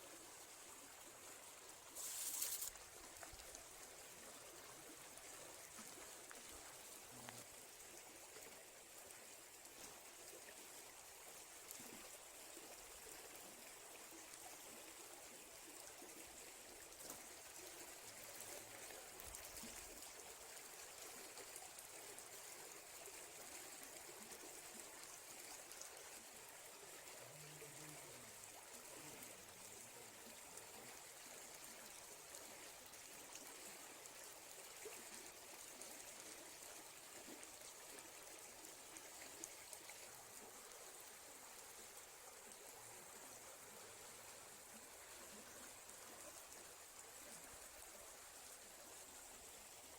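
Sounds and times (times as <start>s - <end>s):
flowing stream rushing: 0.6s - 8.4s.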